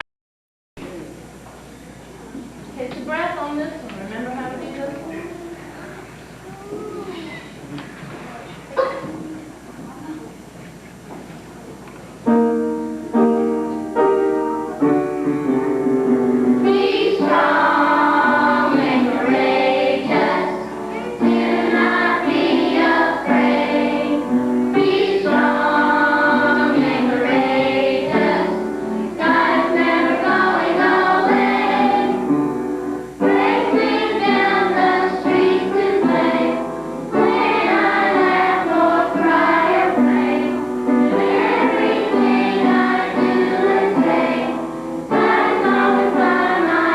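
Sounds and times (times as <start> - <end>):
musical accompaniment: 12.2 - 46.9
children singing: 16.6 - 32.4, 33.2 - 46.9.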